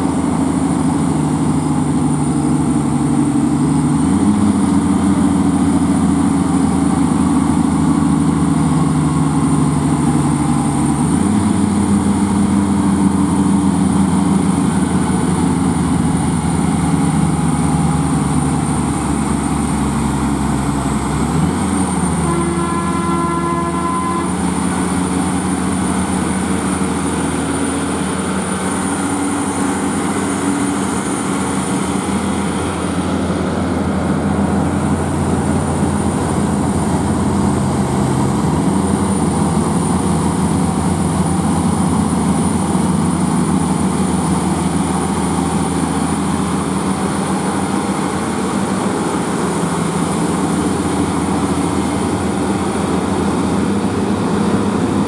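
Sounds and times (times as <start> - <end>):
diesel truck engine droning: 0.0 - 55.0
thin high whine: 21.6 - 25.1.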